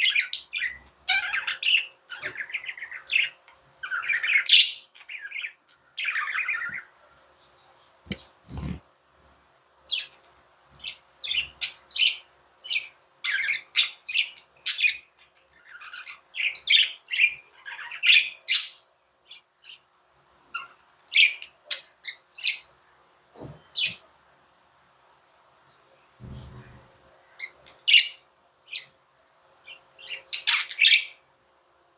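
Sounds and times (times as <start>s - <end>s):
budgerigars chirping: 29.7s - 31.2s.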